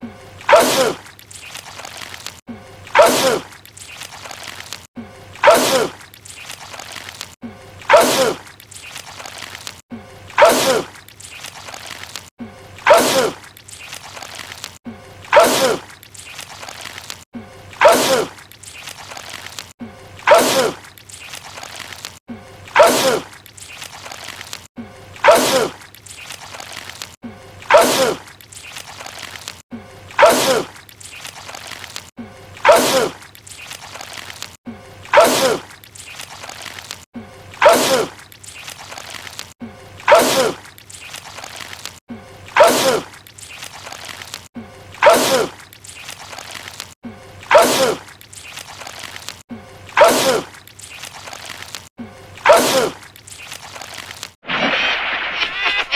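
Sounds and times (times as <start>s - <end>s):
man sneezing loudly: 30.2s - 30.7s, 42.6s - 43.1s, 52.4s - 53.0s.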